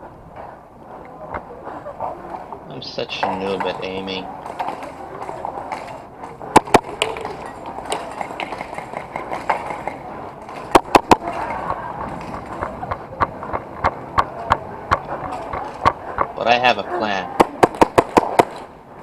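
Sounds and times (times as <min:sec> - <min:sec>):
airsoft guns firing: 0:04.4 - 0:16.3, 0:17.3 - 0:18.7.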